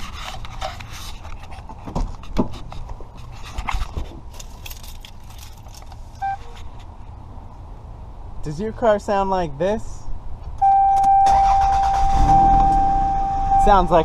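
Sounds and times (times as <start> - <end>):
short tone: 10.6 - 14.0.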